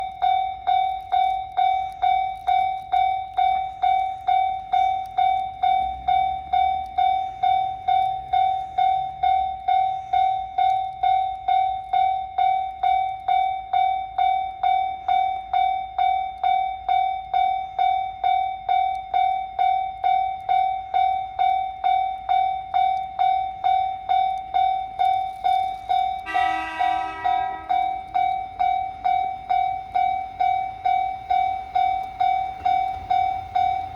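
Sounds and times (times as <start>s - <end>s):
level crossing warning bell: 0.0s - 33.9s
train horn chord: 26.2s - 28.3s.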